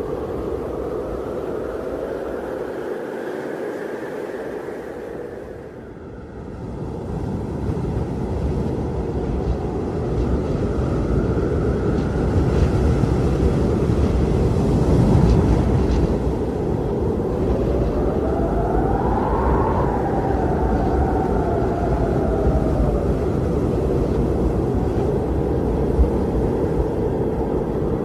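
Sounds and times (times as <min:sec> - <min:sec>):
faint wind whistling: 0:00.0 - 0:28.0
strong gusty wind: 0:00.0 - 0:28.0.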